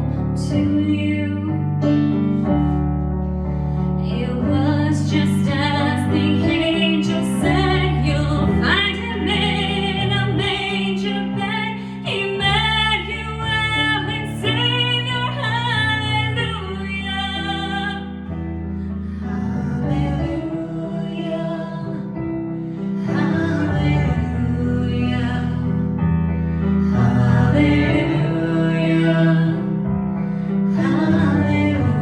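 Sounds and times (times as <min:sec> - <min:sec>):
keyboard accompaniment: 0:00.0 - 0:32.0
woman singing slow song: 0:00.4 - 0:01.8, 0:04.0 - 0:18.2, 0:30.8 - 0:32.0.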